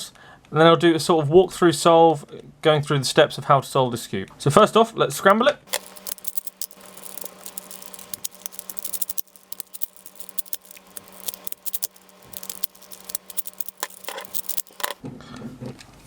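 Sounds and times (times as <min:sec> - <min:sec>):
plastic puzzle clicking and rattling: 0:05.7 - 0:15.0.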